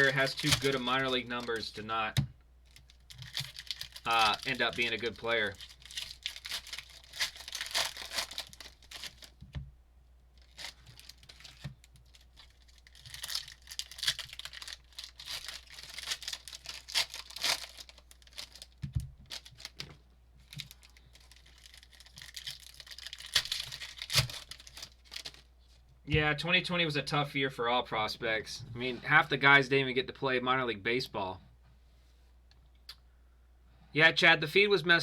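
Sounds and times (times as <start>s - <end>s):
card pack wrappers crinkling: 0.0s - 9.5s, 10.4s - 25.5s.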